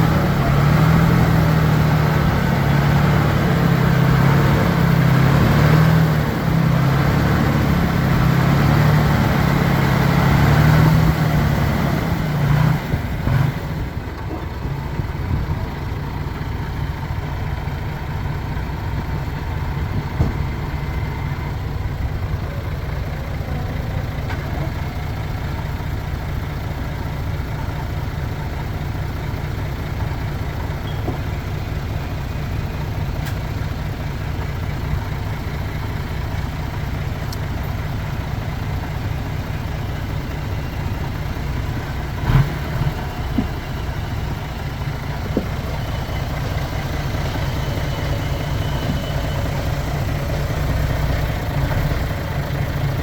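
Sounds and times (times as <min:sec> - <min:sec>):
heavy diesel engine running: 0:00.0 - 0:53.0.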